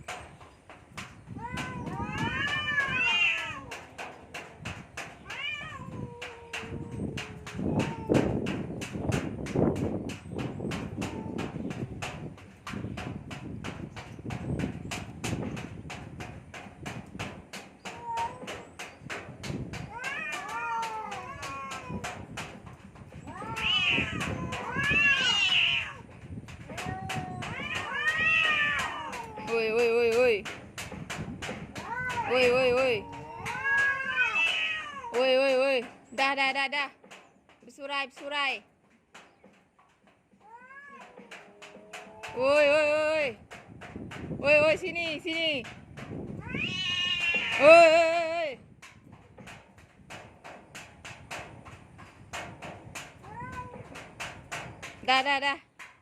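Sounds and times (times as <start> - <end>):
cats yowling: 1.4 - 3.8, 5.2 - 8.7, 10.9 - 11.7, 17.9 - 18.8, 19.8 - 22.3, 23.2 - 26.1, 26.7 - 29.8, 31.8 - 35.2, 40.4 - 42.4, 46.4 - 47.7, 53.2 - 54.0.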